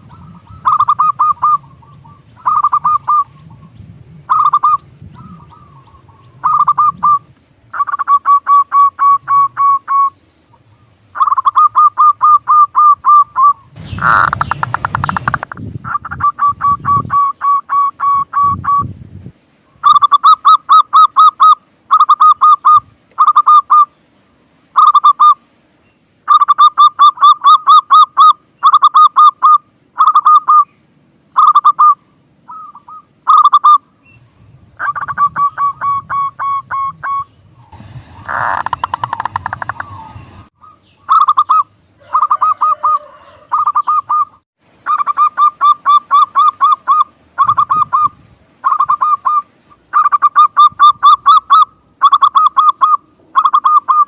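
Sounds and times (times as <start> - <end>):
dove cooing: 0.0 - 18.8, 31.4 - 33.8, 34.8 - 37.3, 38.3 - 54.0.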